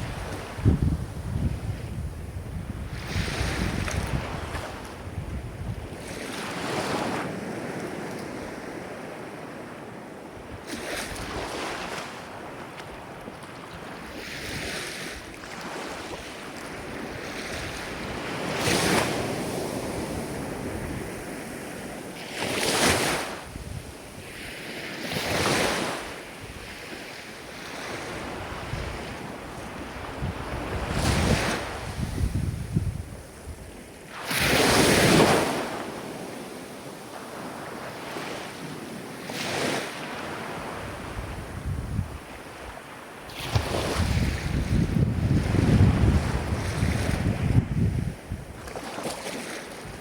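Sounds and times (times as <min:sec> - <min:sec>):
ocean waves breaking: 0:33.3 - 0:50.0.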